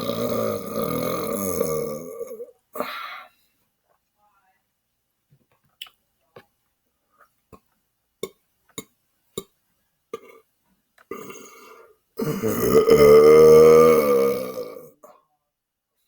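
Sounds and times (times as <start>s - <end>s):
man belching: 0.0s - 2.9s, 10.2s - 10.4s, 11.1s - 15.0s.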